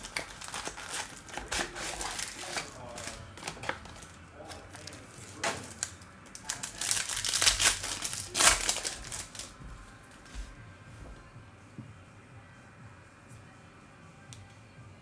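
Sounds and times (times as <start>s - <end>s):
packaging tearing and crinkling: 0.0s - 9.6s.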